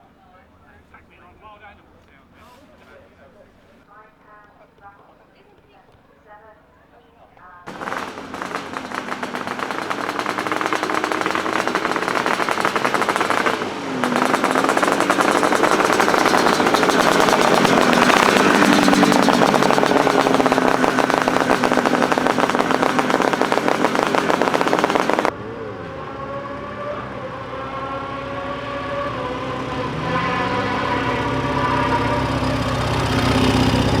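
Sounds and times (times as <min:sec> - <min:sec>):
racing engines revving hard: 0:07.7 - 0:34.0.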